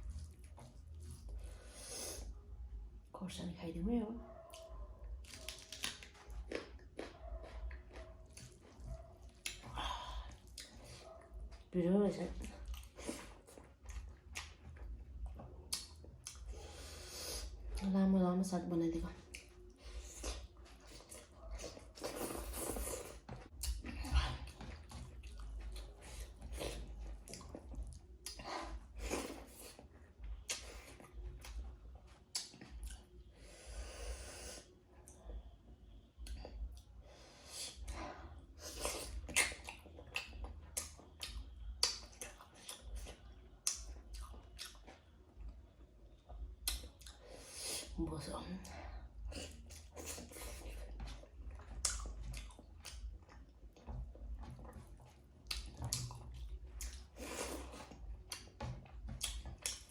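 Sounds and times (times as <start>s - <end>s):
person chewing and lip-smacking: 4.5s - 11.7s, 12.4s - 16.7s, 19.2s - 33.1s, 38.6s - 45.6s, 46.4s - 47.9s, 49.3s - 59.9s.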